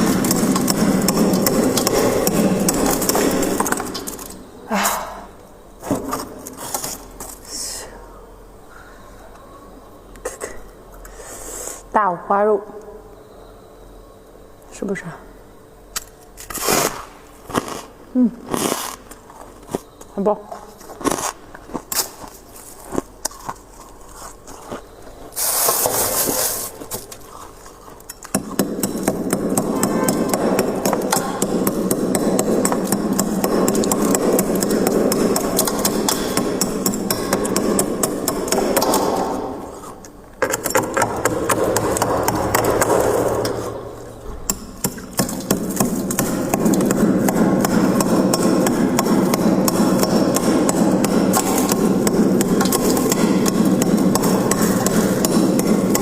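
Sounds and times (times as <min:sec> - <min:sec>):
chewing crunchy frost: 0:16.5 - 0:19.9, 0:20.8 - 0:24.9
frost and ice crunching: 0:20.7 - 0:28.4.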